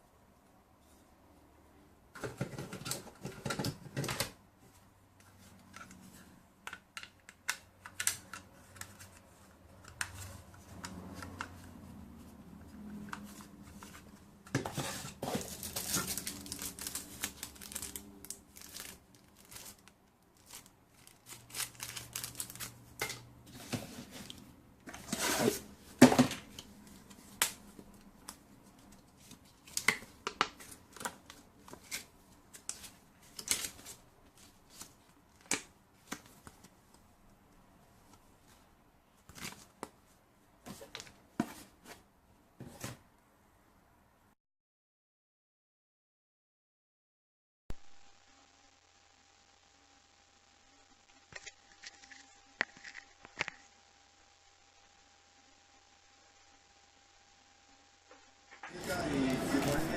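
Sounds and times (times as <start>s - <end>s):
packaging rustling: 14.7s - 25.6s.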